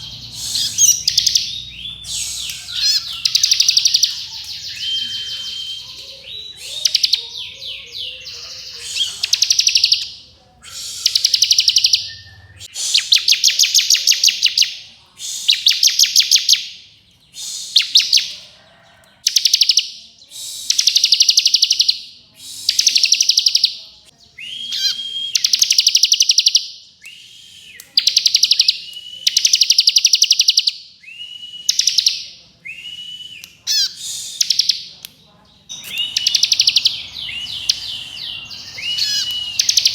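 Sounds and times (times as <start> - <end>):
bird trilling song: 0.0 - 20.0, 20.6 - 39.9.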